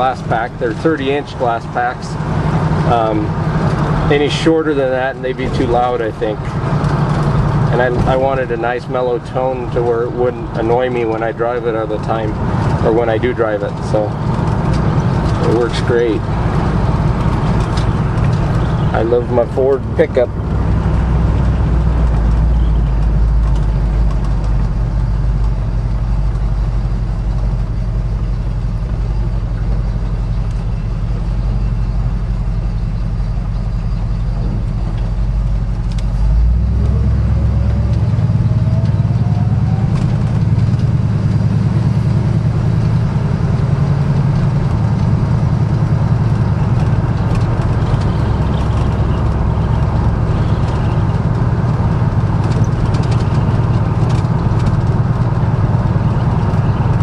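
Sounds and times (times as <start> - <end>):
truck engine idling: 0.0 - 57.0.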